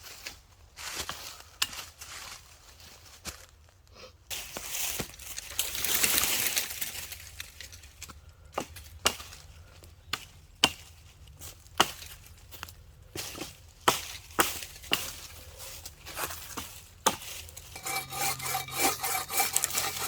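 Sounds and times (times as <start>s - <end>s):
axe chopping wood: 10.1s - 10.9s, 13.8s - 15.2s, 17.0s - 17.3s.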